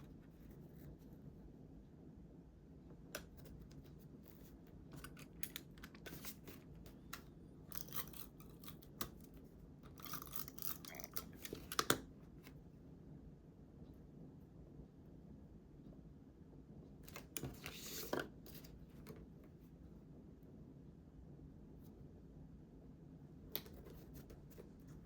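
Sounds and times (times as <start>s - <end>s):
scissors snipping paper: 4.4s - 9.3s.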